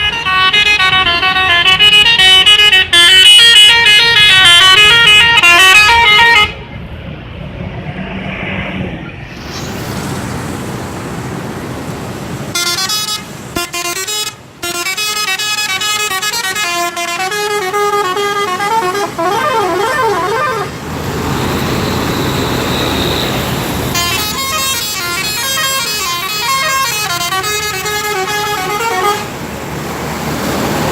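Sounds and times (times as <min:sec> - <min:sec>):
musical bus air horn: 0:00.0 - 0:06.6, 0:12.5 - 0:20.8, 0:22.0 - 0:29.4
street and engine noise: 0:00.0 - 0:30.9.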